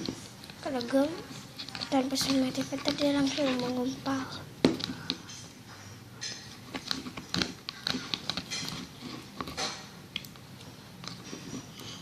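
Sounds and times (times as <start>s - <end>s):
spoon stirring slime: 0.0s - 5.6s, 6.2s - 12.0s.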